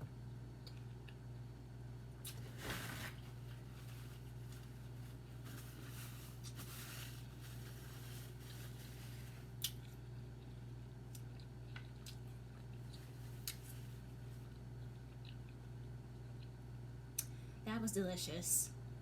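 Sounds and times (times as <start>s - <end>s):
steady low hum: 0.0s - 19.0s
chewing and crunching apple: 9.5s - 16.6s.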